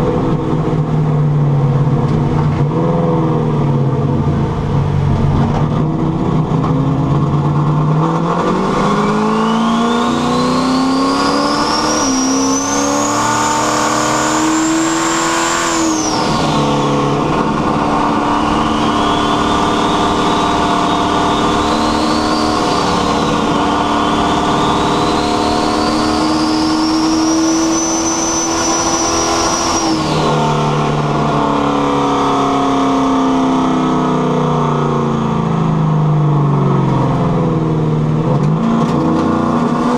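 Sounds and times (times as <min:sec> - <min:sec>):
car engine accelerating hard: 0:00.0 - 0:39.9
rising turbo whistle: 0:08.8 - 0:32.4.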